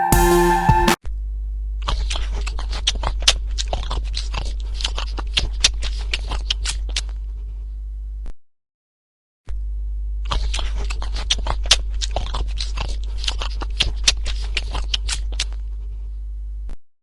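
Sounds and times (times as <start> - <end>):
person chewing crunchy food: 10.4 - 15.6.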